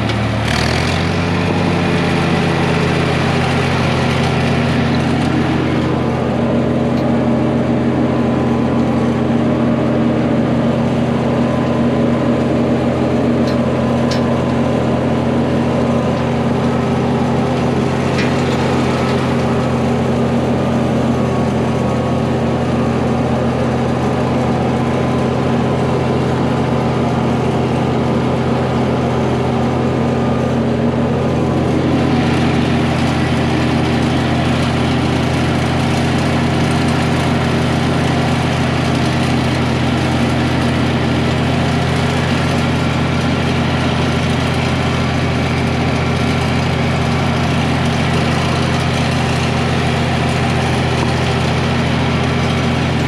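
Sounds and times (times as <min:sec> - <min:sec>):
vehicle engine running: 0:00.0 - 0:53.0.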